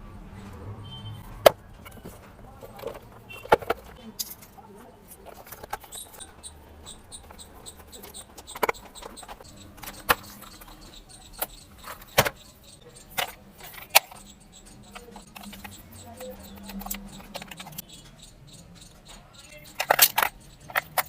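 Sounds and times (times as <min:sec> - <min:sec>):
light plastic rattling: 0:01.3 - 0:14.3, 0:14.9 - 0:21.0
hard plastic toy car clicks: 0:01.4 - 0:04.4, 0:07.3 - 0:12.4, 0:19.0 - 0:21.0.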